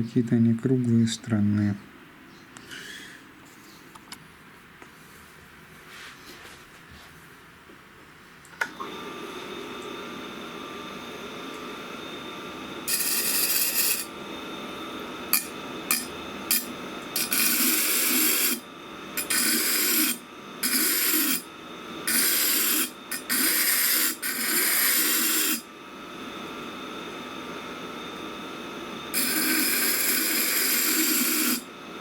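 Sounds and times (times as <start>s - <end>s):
knife grinding on sharpening wheel: 12.9s - 14.1s, 15.3s - 18.6s, 19.2s - 25.7s, 29.1s - 31.7s.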